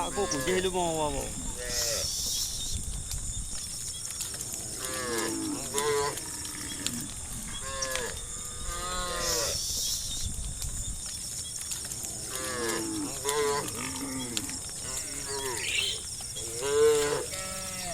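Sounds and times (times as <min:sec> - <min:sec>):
cows mooing: 0:00.0 - 0:02.1, 0:12.3 - 0:17.9.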